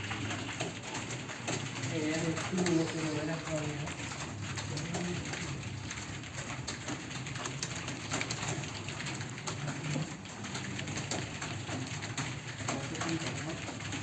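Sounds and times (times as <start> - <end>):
keyboard typing: 0.0 - 14.0.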